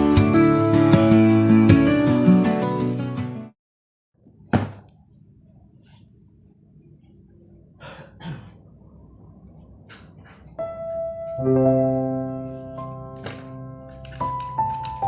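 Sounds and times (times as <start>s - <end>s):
piano music: 0.0s - 3.5s, 10.6s - 15.0s.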